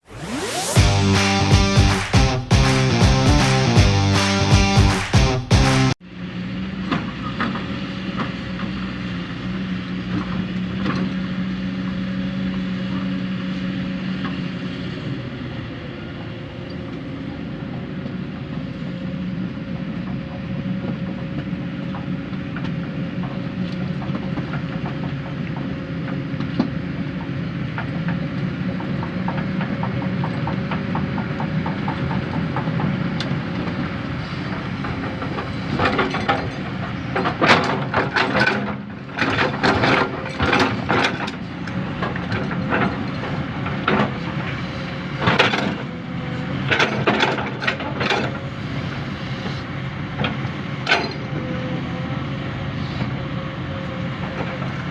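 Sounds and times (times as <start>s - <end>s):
diesel engine running: 0.1s - 19.7s, 20.6s - 54.9s.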